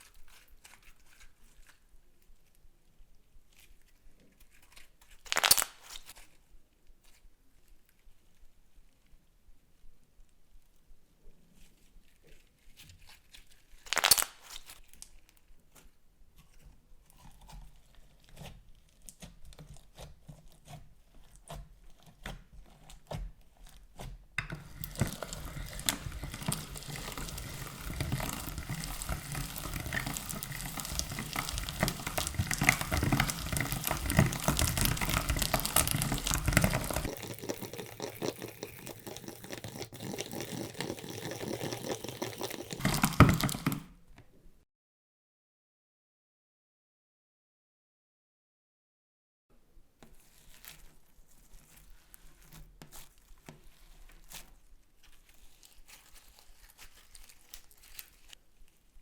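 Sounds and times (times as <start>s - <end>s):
slime squished by hand: 5.2s - 6.2s, 13.9s - 14.7s, 23.8s - 40.8s.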